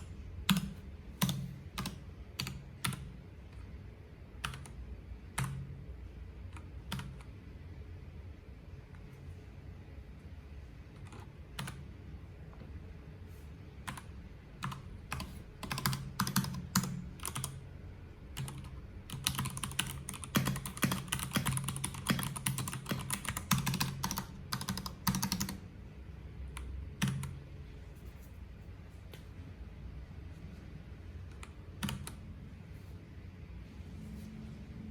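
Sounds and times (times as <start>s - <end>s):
typing on mechanical keyboard: 0.0s - 3.2s, 6.5s - 7.3s, 11.0s - 11.8s, 13.9s - 17.6s, 18.4s - 25.6s, 31.3s - 32.2s.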